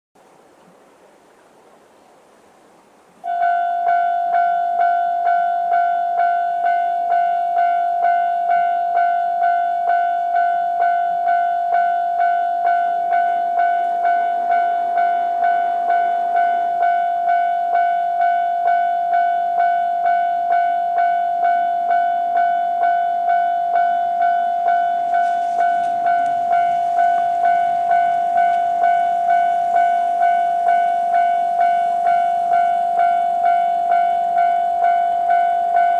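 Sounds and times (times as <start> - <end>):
level crossing warning bell: 3.2 - 35.9
rushing noise: 11.6 - 19.1, 24.4 - 35.9.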